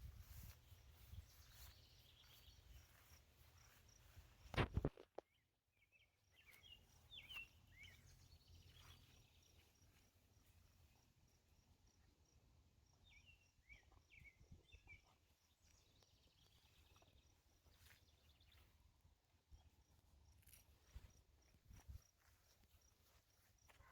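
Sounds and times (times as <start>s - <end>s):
faint bird chirps: 0.0s - 4.2s, 5.2s - 11.1s, 11.8s - 18.9s.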